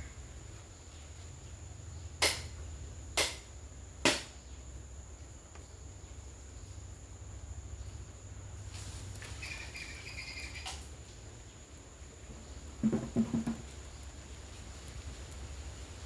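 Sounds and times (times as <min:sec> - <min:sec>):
high-pitched insect tone: 0:09.2 - 0:11.0
knocks on wooden table: 0:12.8 - 0:13.7.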